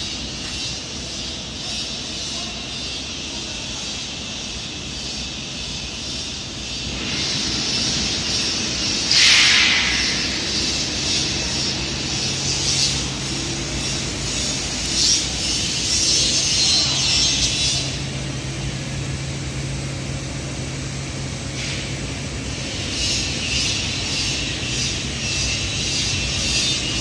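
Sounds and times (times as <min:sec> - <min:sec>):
furnace machinery hissing: 0:00.0 - 0:27.0
loud burst of hiss: 0:06.5 - 0:16.8.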